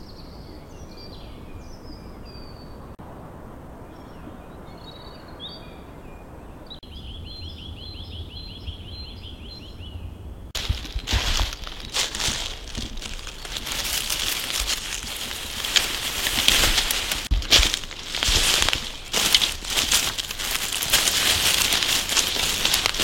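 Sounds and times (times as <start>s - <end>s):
songbirds chirping: 0.0s - 3.0s, 3.7s - 23.0s
crinkling and rustling: 10.6s - 23.0s.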